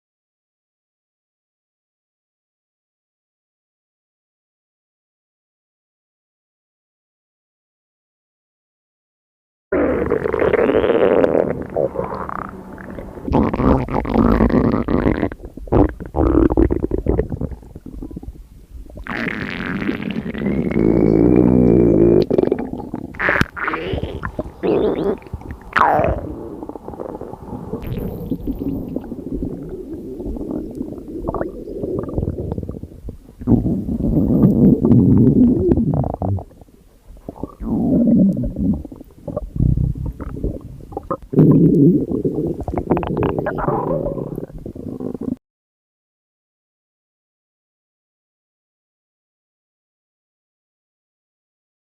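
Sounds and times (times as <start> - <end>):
stomach growling: 9.7 - 45.4.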